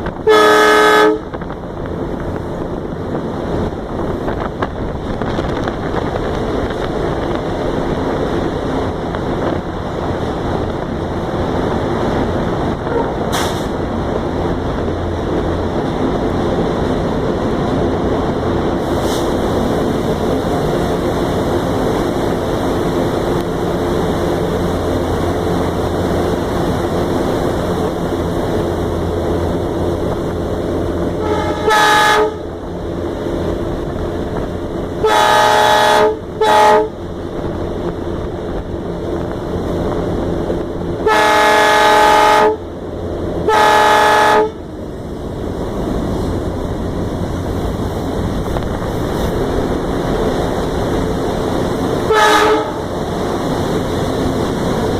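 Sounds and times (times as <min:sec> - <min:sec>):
diesel locomotive running: 0:00.0 - 0:54.9
locomotive horn blasts: 0:00.2 - 0:01.4, 0:12.8 - 0:13.3, 0:31.2 - 0:32.5, 0:35.0 - 0:37.0, 0:41.0 - 0:42.6, 0:43.4 - 0:44.6, 0:52.0 - 0:52.8.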